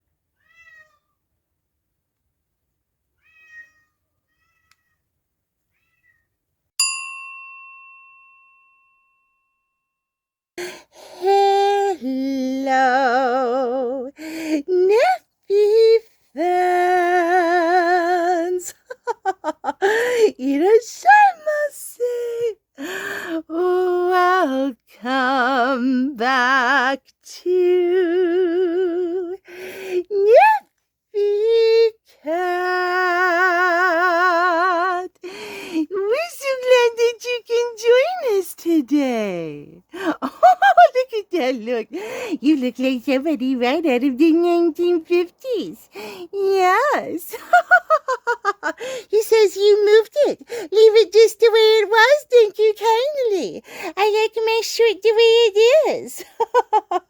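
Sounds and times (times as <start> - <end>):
cat meowing: 0.4 - 1.2, 3.2 - 5.0, 5.7 - 6.4
bell-like ding: 6.8 - 9.9
woman singing wordless notes: 11.2 - 18.7, 20.3 - 22.6, 23.4 - 29.4, 30.0 - 30.6, 31.2 - 35.2, 40.4 - 47.2.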